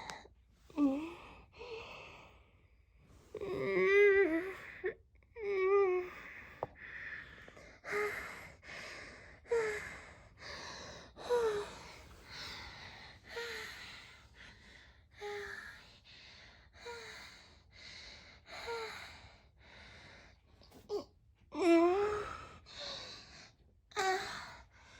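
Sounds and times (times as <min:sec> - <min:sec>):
person breathing heavily and moaning: 0:03.3 - 0:17.9.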